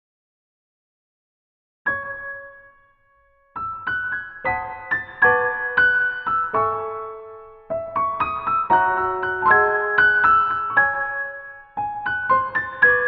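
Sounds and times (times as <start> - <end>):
gentle piano music: 1.9 - 13.0.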